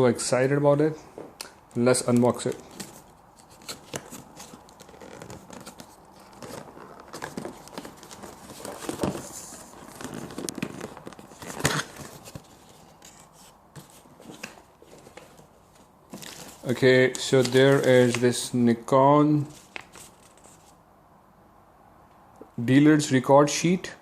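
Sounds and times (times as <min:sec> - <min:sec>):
paper tearing and crinkling: 0:02.6 - 0:14.6
cardboard box being opened: 0:02.6 - 0:15.5, 0:16.1 - 0:18.2.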